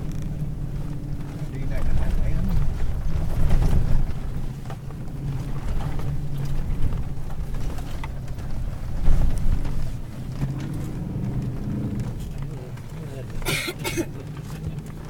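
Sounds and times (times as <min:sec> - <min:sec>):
suv engine low hum: 0:00.0 - 0:15.0.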